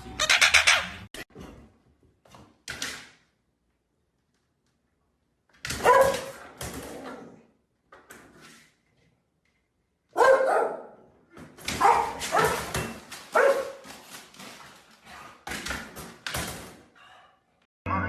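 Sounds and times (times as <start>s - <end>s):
dog barking: 5.8s - 6.4s, 10.1s - 11.1s, 11.8s - 12.7s, 13.3s - 13.8s.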